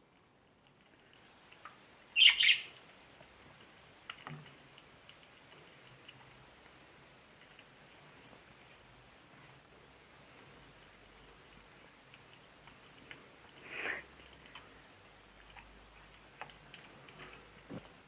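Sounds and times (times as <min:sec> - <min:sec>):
budgie squawk: 0:02.2 - 0:02.7.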